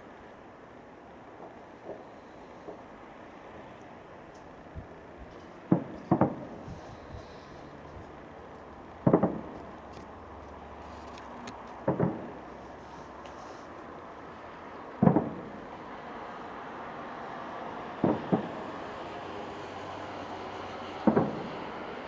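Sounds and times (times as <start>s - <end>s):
fireworks booming overhead: 1.3s - 3.2s, 4.5s - 19.4s, 20.1s - 22.0s.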